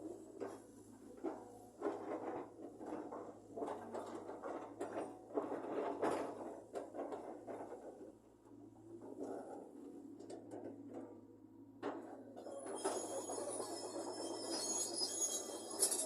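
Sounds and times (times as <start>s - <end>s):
excavator scraping and knocking: 0.2s - 9.8s, 11.9s - 16.0s.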